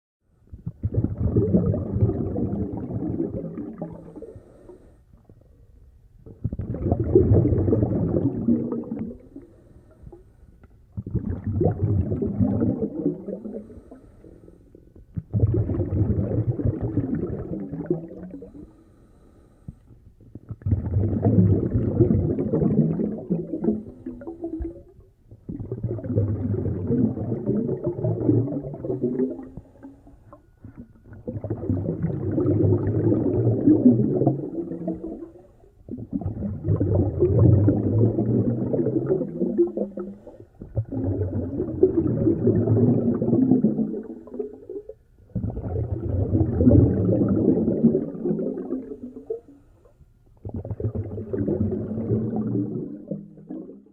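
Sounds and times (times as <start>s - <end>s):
bubbling exhalations: 0.5s - 5.4s, 6.2s - 10.2s, 10.9s - 18.8s, 20.2s - 49.6s, 50.4s - 53.9s
diver breathing through regulator: 4.0s - 5.1s, 9.3s - 10.4s, 13.4s - 14.8s, 18.4s - 19.9s.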